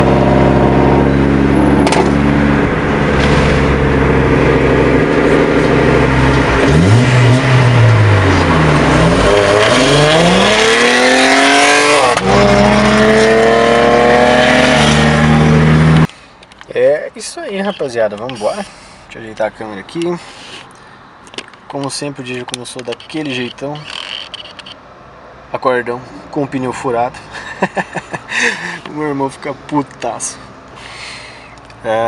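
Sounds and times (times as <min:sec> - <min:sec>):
car engine accelerating: 0:00.0 - 0:16.1.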